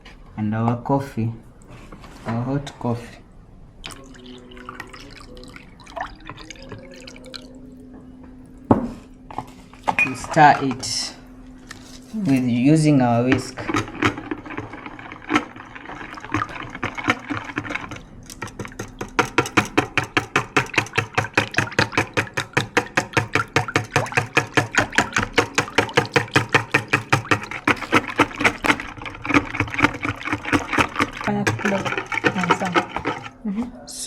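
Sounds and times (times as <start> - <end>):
whisk beating batter in bowl: 9.8 - 11.1, 12.2 - 33.4.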